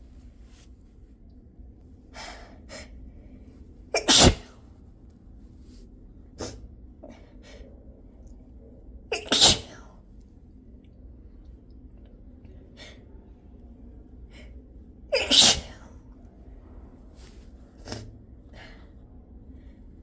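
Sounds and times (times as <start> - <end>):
person sneezing: 4.0 - 4.6, 9.1 - 9.8, 15.1 - 15.9.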